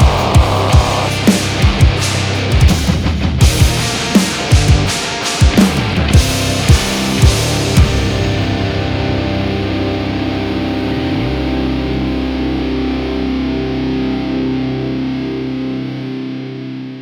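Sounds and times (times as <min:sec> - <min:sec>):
bass note sliding down: 0:00.0 - 0:02.0, 0:07.4 - 0:14.6
distorted electric guitar chord: 0:00.0 - 0:17.0.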